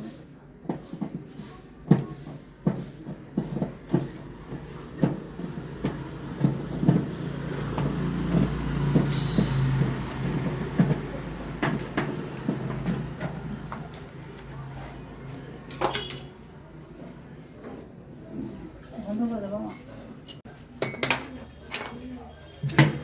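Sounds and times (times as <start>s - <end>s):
knocks and clanks: 5.0s - 13.9s.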